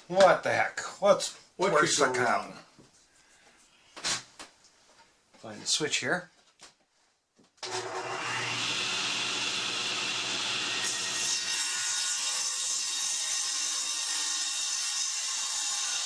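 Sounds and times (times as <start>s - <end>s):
table saw motor whine: 7.6s - 11.3s
saw blade cutting wood board: 7.6s - 16.0s.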